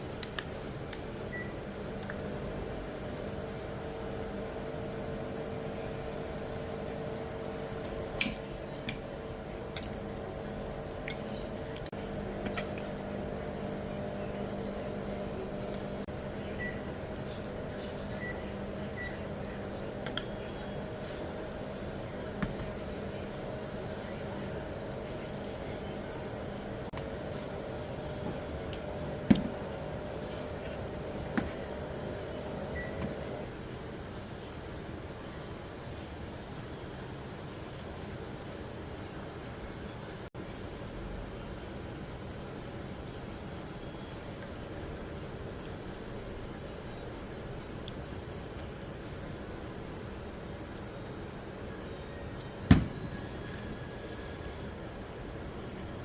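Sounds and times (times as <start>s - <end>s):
steady room hum: 0.0s - 56.0s
tableware clinking: 8.2s - 9.1s.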